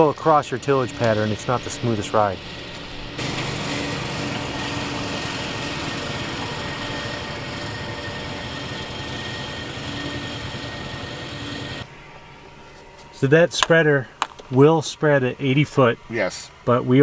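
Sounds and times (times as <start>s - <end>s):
fertilizer spreader running: 0.0s - 11.9s
tractor engine running: 0.0s - 11.9s, 13.6s - 14.8s
faint high whine: 0.0s - 17.0s.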